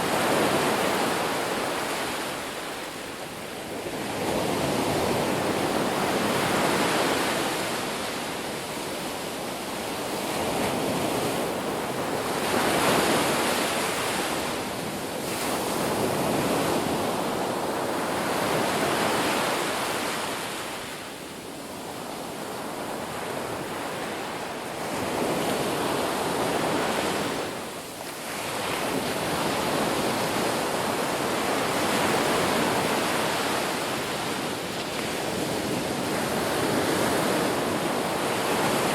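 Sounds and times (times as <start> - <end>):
ocean waves breaking on beach: 0.0 - 38.9
wind on microphone: 21.6 - 38.9.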